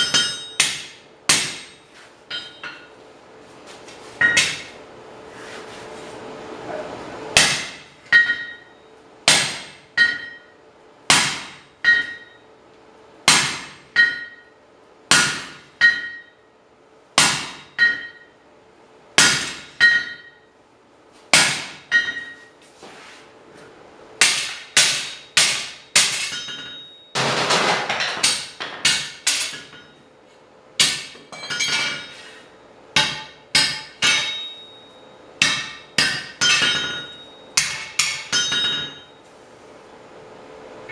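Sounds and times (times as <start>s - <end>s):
hammer ringing on hot steel: 0.0s - 2.9s, 4.2s - 4.7s, 7.4s - 12.5s, 13.3s - 16.5s, 17.2s - 18.4s, 19.2s - 20.5s, 21.4s - 22.5s, 24.2s - 27.3s, 28.2s - 30.0s, 30.8s - 39.2s.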